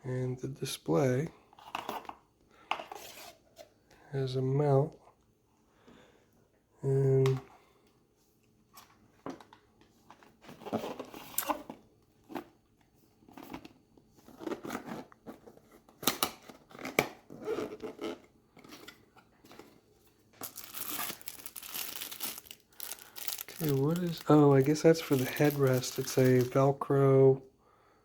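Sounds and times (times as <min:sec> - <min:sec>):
plastic bag crinkling: 0:20.4 - 0:26.8
plastic packaging rustling: 0:20.4 - 0:26.8.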